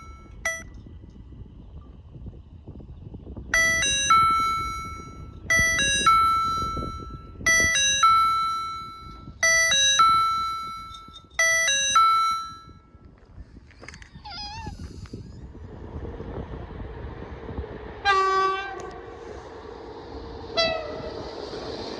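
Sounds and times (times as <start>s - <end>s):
level crossing warning chime: 0.0s - 0.7s, 3.5s - 12.9s.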